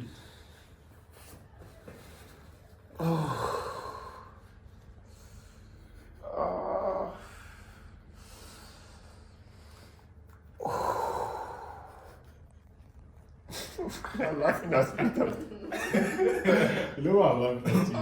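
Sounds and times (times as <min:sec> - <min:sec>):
person breathing heavily: 0:00.0 - 0:12.5.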